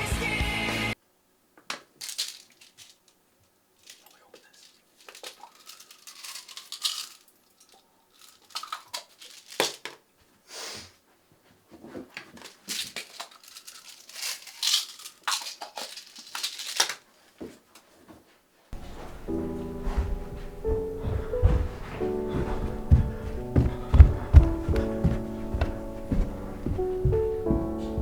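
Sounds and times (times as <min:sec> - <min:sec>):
crumpling and tearing: 0:02.0 - 0:03.2, 0:03.8 - 0:09.9, 0:12.2 - 0:17.4
brief hiss: 0:10.5 - 0:10.9.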